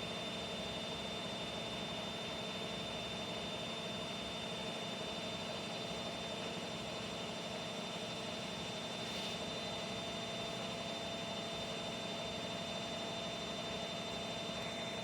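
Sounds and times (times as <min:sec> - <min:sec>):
washing machine hum: 0:04.6 - 0:15.0.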